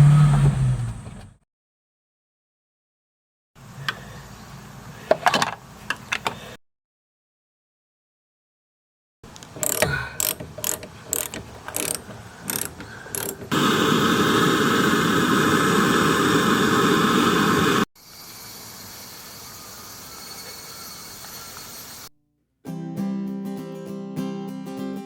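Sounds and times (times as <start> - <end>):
mechanical clicks and knocks: 9.3 - 13.6.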